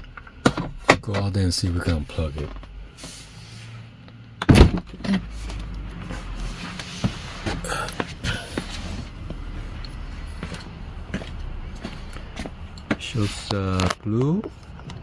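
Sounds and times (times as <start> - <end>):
loud clunk: 4.4 - 5.2.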